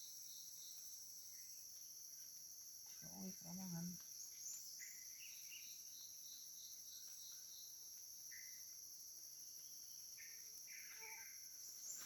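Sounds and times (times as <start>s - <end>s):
jungle insects chorus: 0.0s - 12.0s
bird-like chirps: 9.6s - 12.0s.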